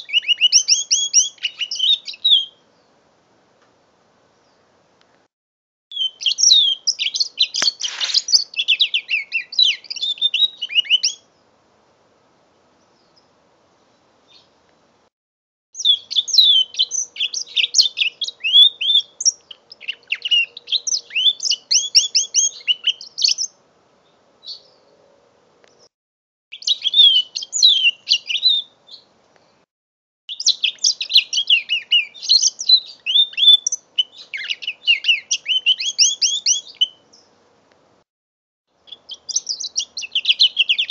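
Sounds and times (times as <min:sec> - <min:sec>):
bird warbling trills and chirps: 0:05.9 - 0:11.3, 0:30.3 - 0:37.3.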